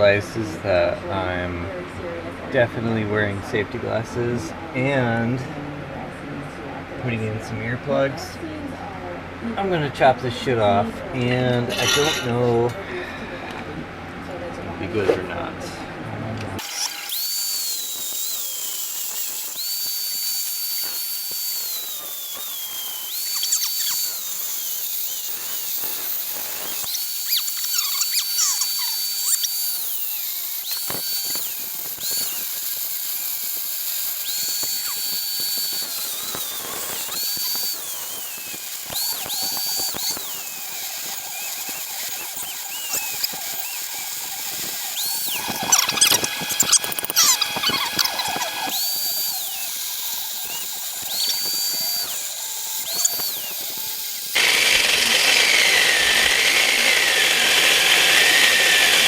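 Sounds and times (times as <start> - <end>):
angle grinder cutting metal: 11.3 - 13.6, 16.6 - 59.0.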